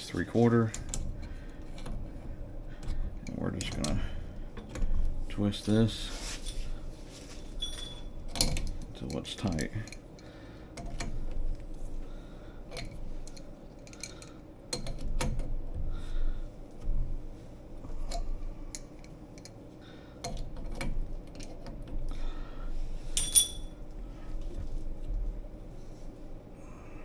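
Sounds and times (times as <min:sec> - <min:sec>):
ringing metal clink: 0:07.6 - 0:08.1, 0:23.2 - 0:23.7
metallic clicks of pipe fittings: 0:12.7 - 0:15.4, 0:18.0 - 0:19.6.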